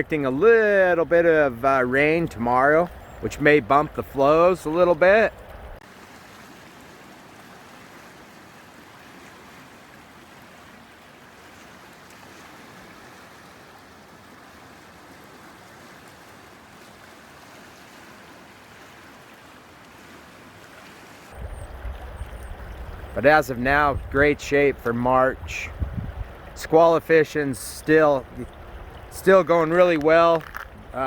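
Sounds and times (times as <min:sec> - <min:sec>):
river current rushing: 0:00.0 - 0:31.0.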